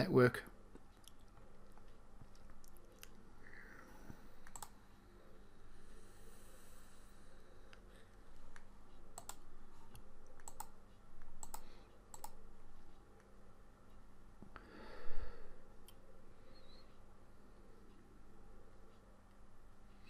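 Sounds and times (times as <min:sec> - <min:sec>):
faint electrical hum: 0:00.0 - 0:20.0
computer mouse clicking: 0:04.3 - 0:04.8, 0:08.5 - 0:12.4.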